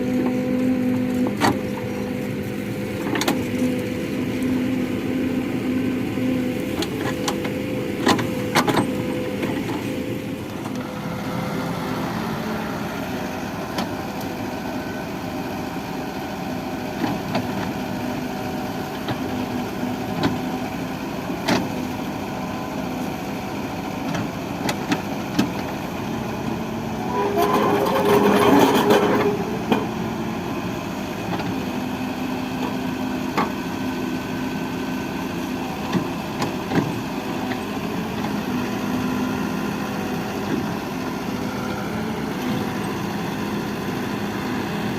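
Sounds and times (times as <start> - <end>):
excavator diesel engine running: 0.0 - 44.9.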